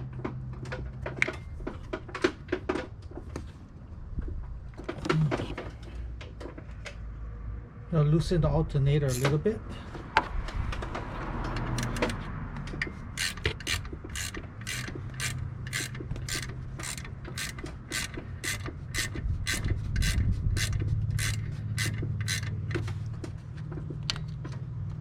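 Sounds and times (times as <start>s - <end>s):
ratchet wrench clicking: 9.1s - 9.3s, 11.5s - 12.2s, 12.8s - 23.0s.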